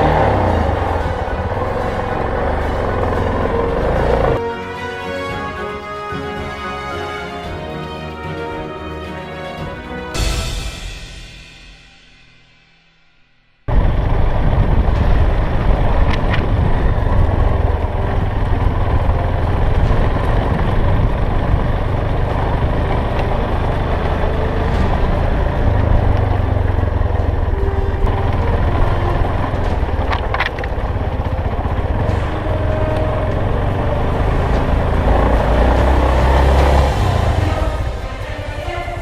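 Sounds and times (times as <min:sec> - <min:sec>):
motorcycle engine rumbling: 0:00.0 - 0:04.4, 0:13.7 - 0:39.0.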